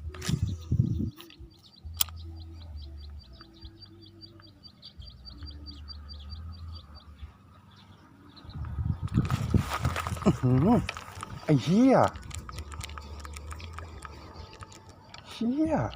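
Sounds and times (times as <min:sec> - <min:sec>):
bird chirping rapidly: 0:00.4 - 0:09.2
sharp click: 0:01.2 - 0:02.2.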